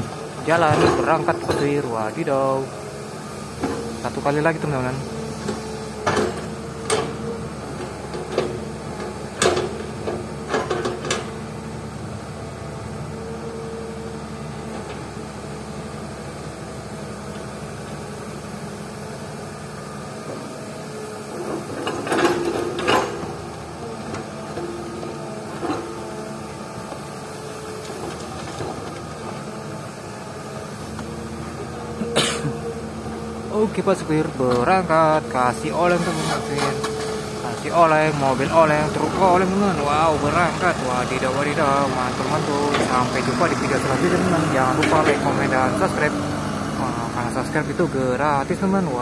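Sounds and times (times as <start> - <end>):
excavator diesel engine running: 0.0 - 49.0.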